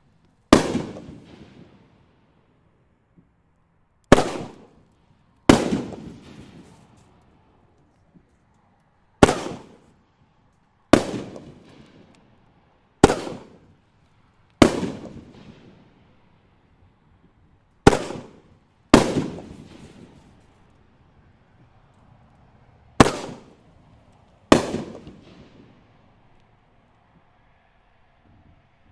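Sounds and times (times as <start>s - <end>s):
fireworks bangs: 0.5s - 2.0s, 4.1s - 4.9s, 5.5s - 7.4s, 9.2s - 10.0s, 10.9s - 12.2s, 13.0s - 13.8s, 14.6s - 16.0s, 17.8s - 20.8s, 23.0s - 23.9s, 24.5s - 26.0s.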